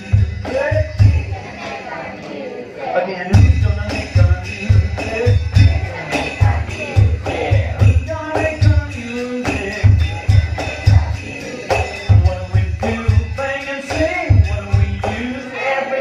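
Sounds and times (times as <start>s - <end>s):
jingling percussion: 0.0s - 2.2s, 3.2s - 16.0s
live band music: 0.0s - 2.4s, 3.1s - 16.0s.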